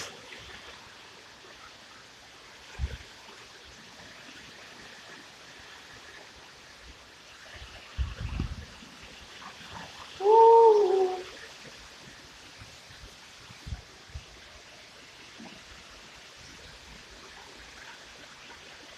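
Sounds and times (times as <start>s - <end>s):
gusty wind: 2.6s - 3.2s, 6.7s - 9.8s
heavy rain: 7.3s - 18.9s
wind buffeting microphone: 7.7s - 8.8s.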